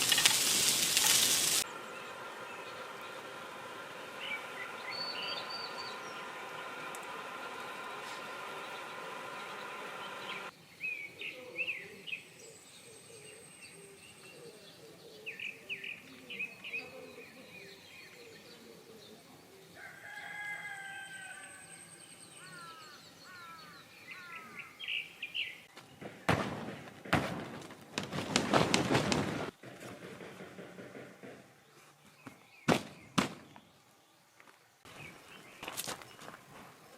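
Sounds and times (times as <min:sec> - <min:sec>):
rustling and crackling: 0:00.0 - 0:01.6, 0:25.7 - 0:32.4
songbirds chirping and singing: 0:00.9 - 0:27.1
steady high drone: 0:01.6 - 0:10.5.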